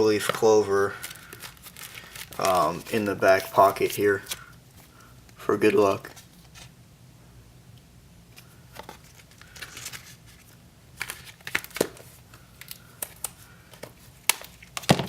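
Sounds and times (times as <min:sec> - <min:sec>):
paper rustling: 0:00.1 - 0:04.9, 0:08.4 - 0:15.0.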